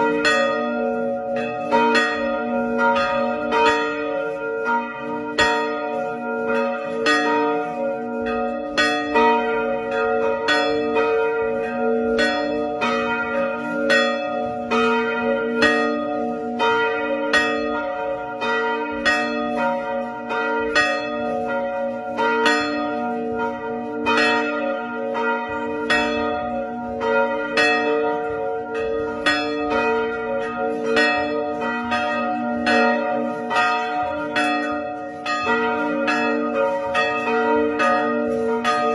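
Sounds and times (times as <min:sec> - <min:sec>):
church bells pealing: 0:00.0 - 0:38.9.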